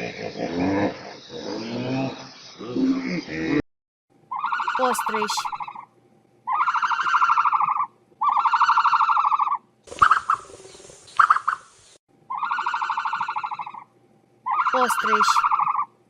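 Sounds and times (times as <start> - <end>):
ostrich buzzy pulsing calls: 4.3 - 5.9, 6.5 - 16.0.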